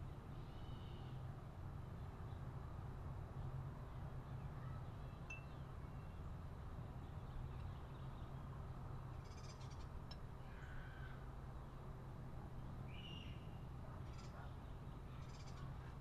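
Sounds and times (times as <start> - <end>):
faint high bird chirps: 4.6 - 6.2, 12.9 - 15.7.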